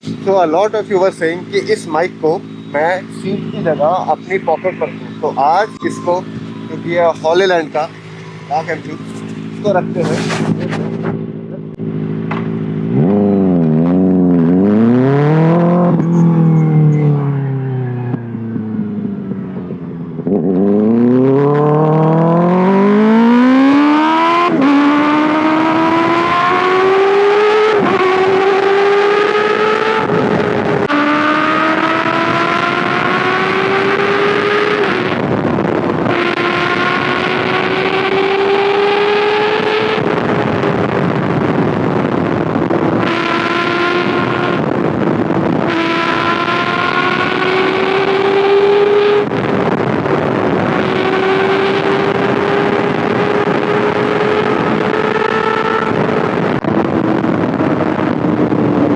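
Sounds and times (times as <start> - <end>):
motorcycle engine accelerating: 0.0 - 58.9
wind rushing: 3.0 - 11.3.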